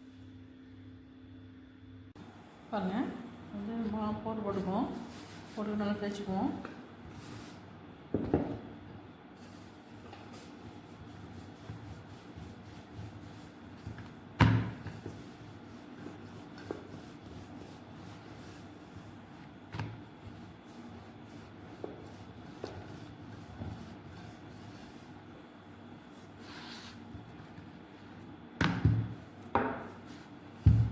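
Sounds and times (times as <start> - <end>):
rolling pin knocking on board: 8.1 - 8.7, 28.6 - 29.9, 30.6 - 30.9
rolling pin rubbing dough: 9.4 - 30.9.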